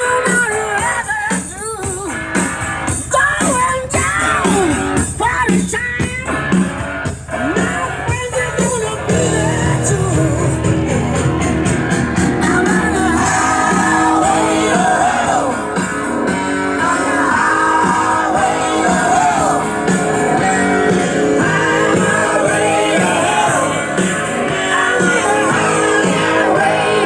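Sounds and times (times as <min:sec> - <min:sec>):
loud rock song with singer: 0:00.0 - 0:27.0.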